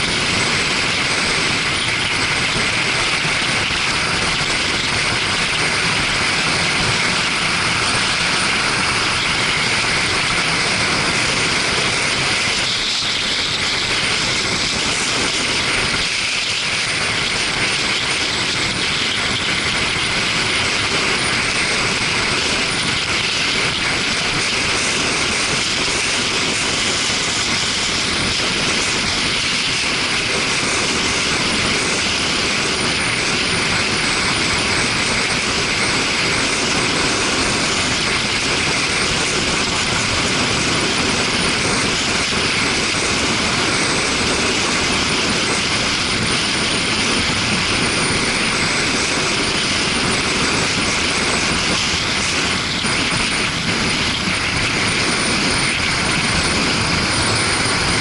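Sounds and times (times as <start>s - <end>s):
motorcycle engine running: 0.0s - 58.0s
wind rushing over camera: 0.0s - 58.0s.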